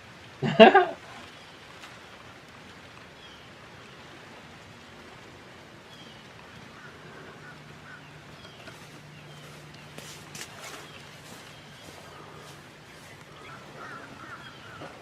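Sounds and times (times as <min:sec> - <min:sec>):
faint bird calls: 0:05.8 - 0:15.0.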